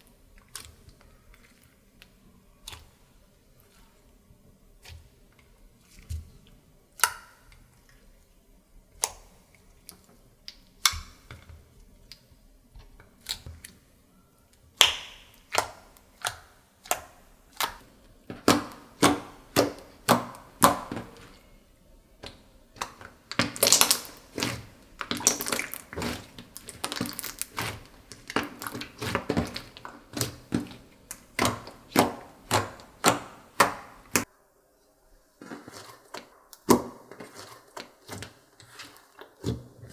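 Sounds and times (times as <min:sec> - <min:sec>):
slime squeezed by hand: 0:23.4 - 0:29.6.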